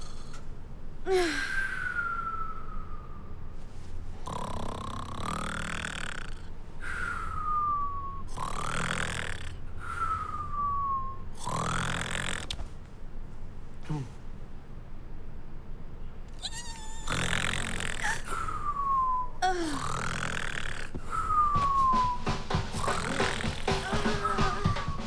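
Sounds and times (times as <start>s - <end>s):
rasping rumbling snore: 4.1s - 6.6s, 8.2s - 10.5s, 11.4s - 12.7s, 13.8s - 14.2s, 16.4s - 25.0s
cartoon whistle on breath out: 16.4s - 25.0s.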